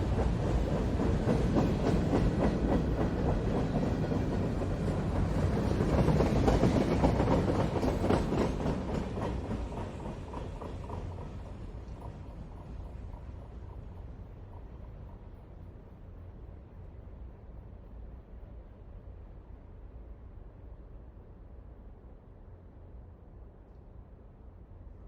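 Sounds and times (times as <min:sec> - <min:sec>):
train wheels clicking over rail joints: 0:00.0 - 0:15.3
freight train rolling past: 0:00.0 - 0:21.8.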